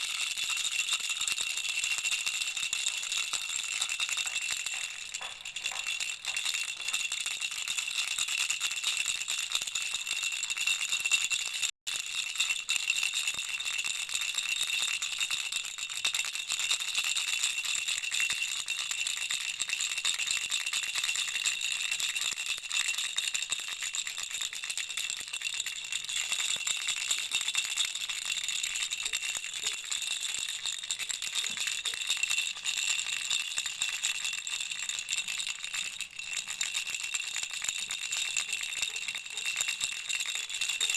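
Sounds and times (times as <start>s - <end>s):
baby rattle jingling: 0.0s - 8.0s, 24.4s - 40.9s.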